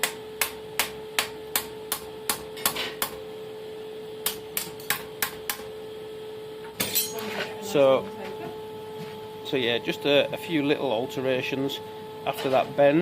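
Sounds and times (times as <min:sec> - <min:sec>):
hammer striking steel on anvil: 0:00.0 - 0:03.2, 0:06.8 - 0:07.3
steady hum: 0:00.0 - 0:13.0.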